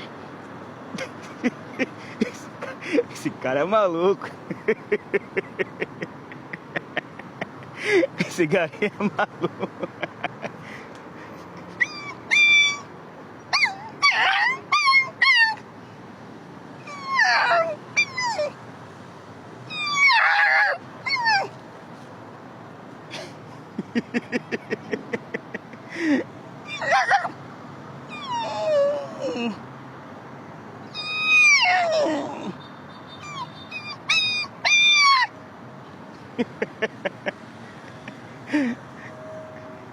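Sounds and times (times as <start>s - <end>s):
man imitating dog yelps: 11.8s - 12.9s, 13.5s - 15.6s, 16.9s - 18.5s, 19.7s - 21.5s, 26.7s - 27.4s, 28.1s - 29.6s, 30.9s - 32.6s, 33.2s - 35.3s.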